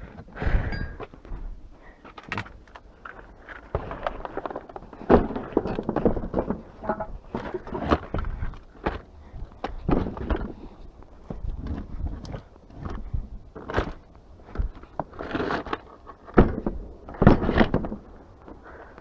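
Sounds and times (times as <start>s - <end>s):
rustling of objects handled: 0.0s - 19.0s
objects knocking and thudding: 3.6s - 14.8s, 16.3s - 18.1s.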